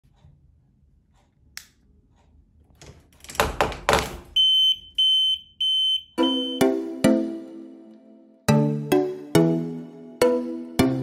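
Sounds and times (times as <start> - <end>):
electronic buzzer beeping: 4.4 - 6.6.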